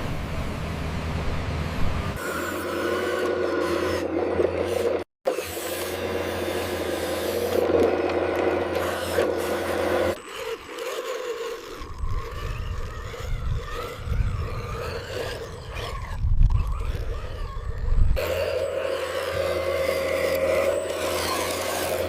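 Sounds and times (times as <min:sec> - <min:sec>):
low rumbling with scraping: 0:00.0 - 0:04.6, 0:11.2 - 0:22.0
motor and gear whine: 0:00.0 - 0:22.0.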